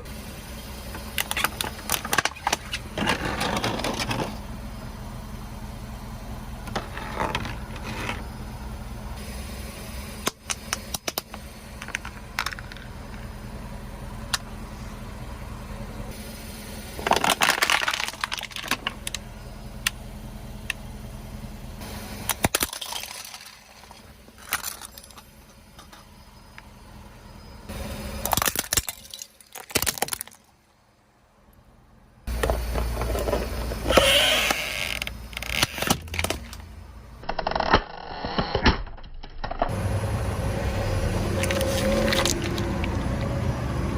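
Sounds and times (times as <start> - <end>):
low car hum: 0.0 - 37.8, 38.8 - 43.9
objects crunching under car tyres: 1.0 - 4.5, 6.6 - 8.6, 16.9 - 20.0, 22.0 - 26.2, 28.1 - 30.8, 32.3 - 39.8, 40.8 - 43.4.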